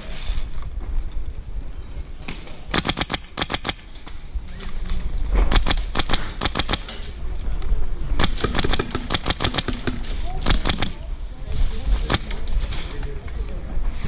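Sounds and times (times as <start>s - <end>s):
airsoft guns firing bursts: 2.7s - 3.9s, 5.5s - 7.0s, 8.2s - 11.0s, 12.0s - 12.4s
low rumble: 4.0s - 14.0s.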